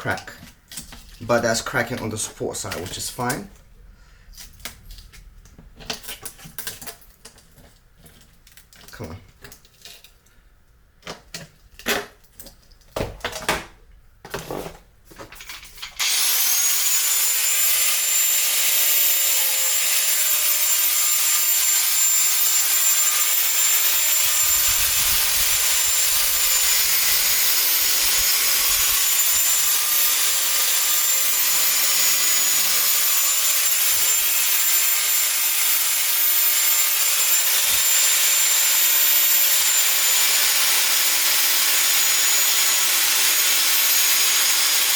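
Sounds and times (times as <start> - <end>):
angle grinder cutting plastic: 15.4 - 44.9.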